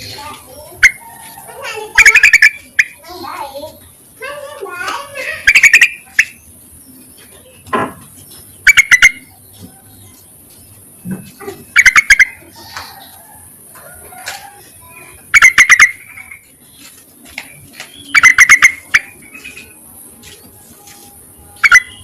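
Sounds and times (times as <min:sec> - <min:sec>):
faint bird chirps: 0:00.0 - 0:03.0, 0:05.4 - 0:13.4, 0:14.1 - 0:19.8, 0:20.4 - 0:22.0
bird chattering calls: 0:00.6 - 0:03.0, 0:05.0 - 0:07.6, 0:08.2 - 0:10.2, 0:11.3 - 0:13.2, 0:14.4 - 0:16.9, 0:17.5 - 0:19.8, 0:21.6 - 0:22.0.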